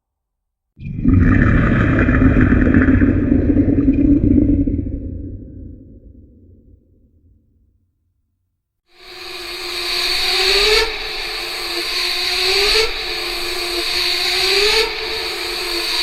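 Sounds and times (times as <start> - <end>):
low rising and falling tone: 1.0 - 7.4
loud machine-like hissing: 9.0 - 16.0.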